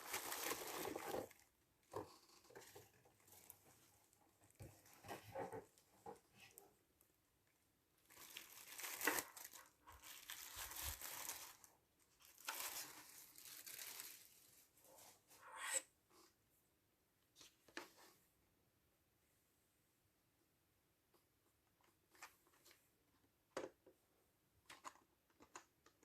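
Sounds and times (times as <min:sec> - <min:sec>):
packaging crinkling and rustling: 0:00.0 - 0:03.9, 0:08.0 - 0:14.6.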